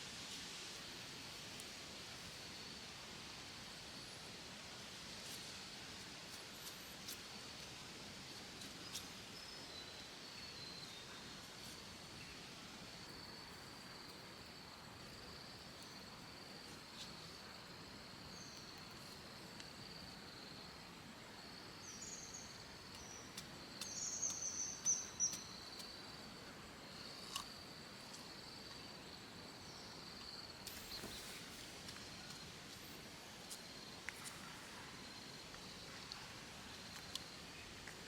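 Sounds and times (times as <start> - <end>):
background hiss of woods: 0.0 - 38.0
bird chirping: 21.9 - 25.8.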